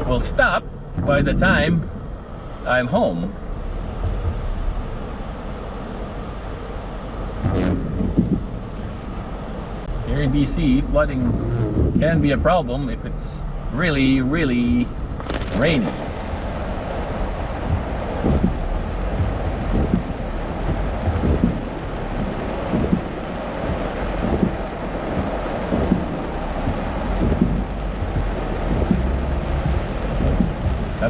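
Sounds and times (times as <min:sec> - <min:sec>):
heavy rain on a car: 0:02.2 - 0:31.0
windshield wiper sweeping: 0:03.6 - 0:06.3, 0:07.2 - 0:09.8, 0:10.4 - 0:12.6, 0:15.1 - 0:31.0.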